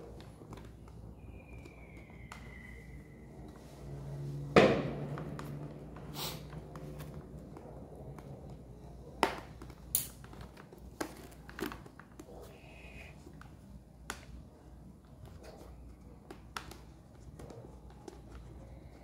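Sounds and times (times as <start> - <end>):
clicks and taps on a helmet: 0.0 - 2.8, 15.2 - 19.0.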